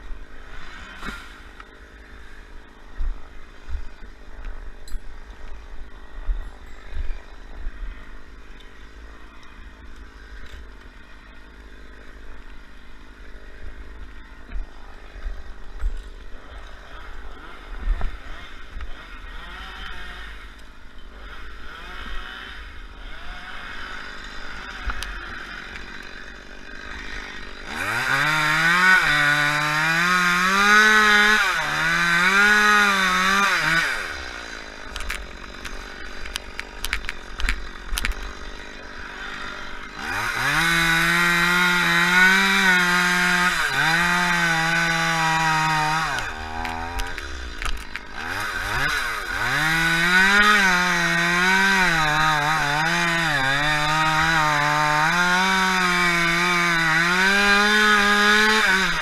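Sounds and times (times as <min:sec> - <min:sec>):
chainsaw idling and cutting: 0:00.0 - 0:59.0.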